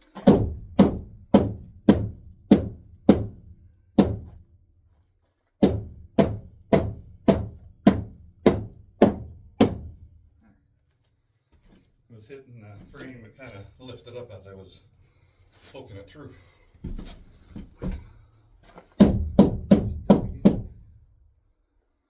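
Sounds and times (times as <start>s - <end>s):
hammer striking wood: 0.1s - 4.4s, 5.6s - 10.1s, 19.0s - 20.8s.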